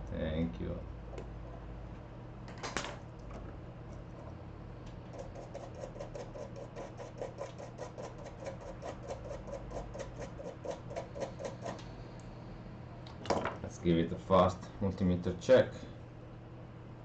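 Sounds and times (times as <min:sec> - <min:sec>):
scrubbing a circuit board: 0:05.1 - 0:11.8.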